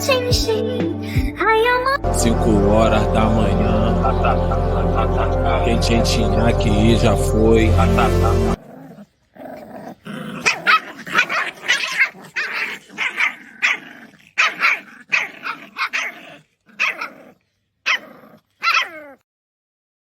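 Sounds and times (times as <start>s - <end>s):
puppy barking: 10.4s - 17.3s, 17.9s - 19.2s.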